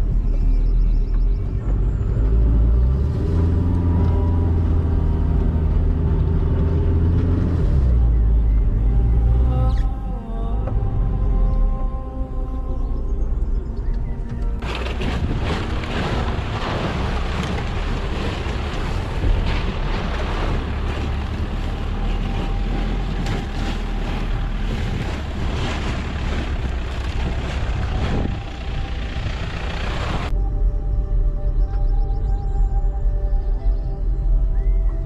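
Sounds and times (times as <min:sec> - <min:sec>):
car engine under load: 0:01.1 - 0:11.8, 0:12.7 - 0:30.3
wind noise on microphone: 0:13.0 - 0:35.0.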